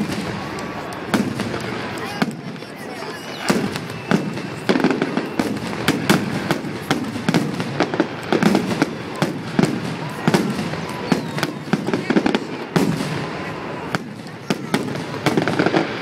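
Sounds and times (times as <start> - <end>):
faint firework whistles: 0.0 - 16.0
fireworks bangs and cracks: 0.0 - 16.0.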